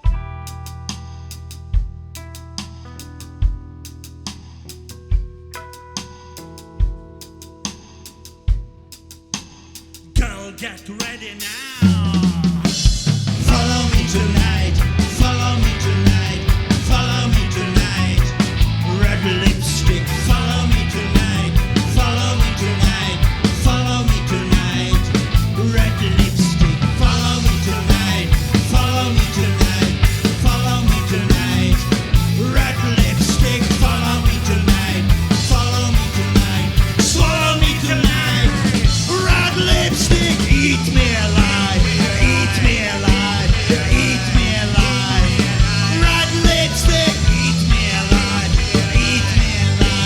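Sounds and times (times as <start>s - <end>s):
rock band playing: 0.0s - 50.0s.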